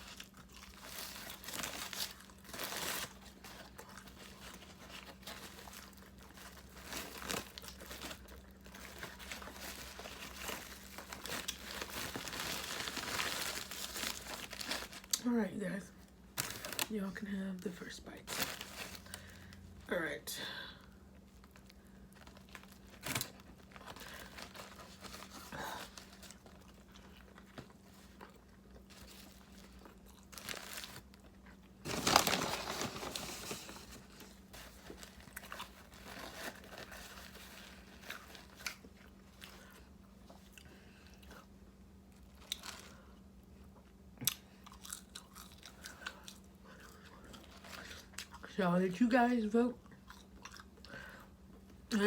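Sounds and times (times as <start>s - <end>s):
food crunching: 0.0s - 15.2s, 21.4s - 34.1s, 44.2s - 48.5s, 49.8s - 51.6s.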